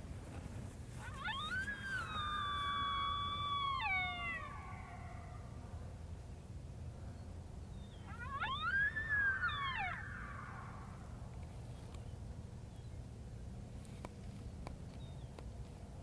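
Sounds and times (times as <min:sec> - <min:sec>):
coyote howls: 0:01.0 - 0:05.6, 0:08.0 - 0:11.1.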